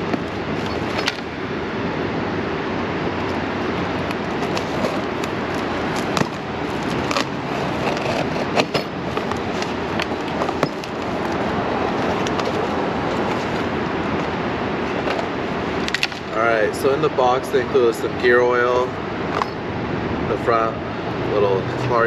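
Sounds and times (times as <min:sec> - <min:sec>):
steady rushing noise: 0:00.0 - 0:22.0
parts and tools clicking in a box: 0:04.0 - 0:13.6.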